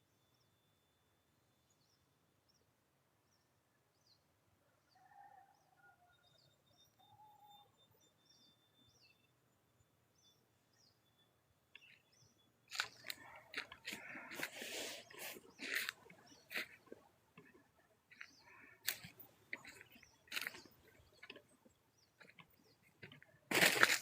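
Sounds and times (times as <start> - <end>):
faint low whistled bird calls: 4.9 - 9.5
small bird chirping: 10.2 - 24.0.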